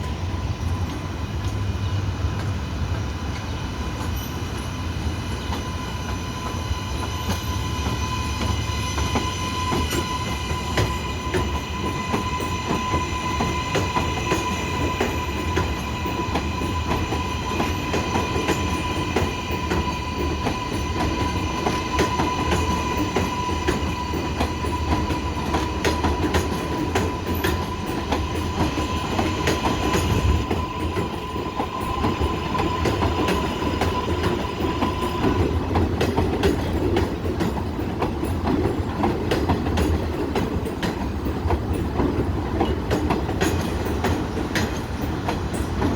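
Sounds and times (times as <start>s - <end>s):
subway train rumbling on track: 0.0s - 45.9s.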